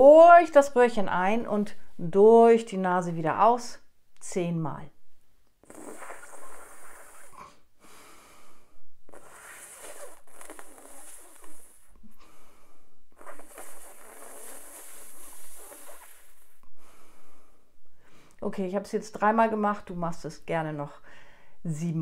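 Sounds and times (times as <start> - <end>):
woman breathing airily: 6.9 - 10.0, 10.7 - 13.1, 14.5 - 18.4, 21.0 - 21.6.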